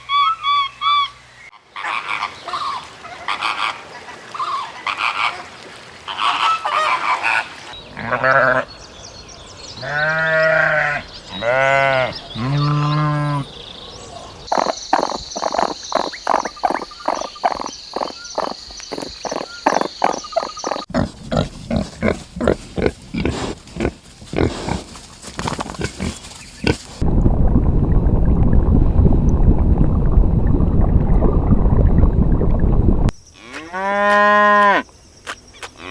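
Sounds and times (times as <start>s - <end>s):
wavering bleats: 9.8s - 13.4s
pig grunts: 14.5s - 26.9s.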